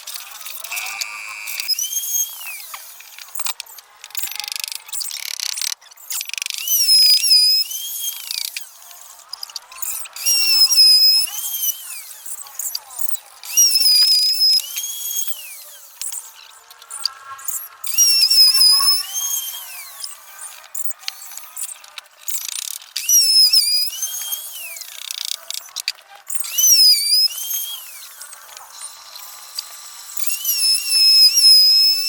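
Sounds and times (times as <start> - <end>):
power drill whining: 0.0 - 32.0.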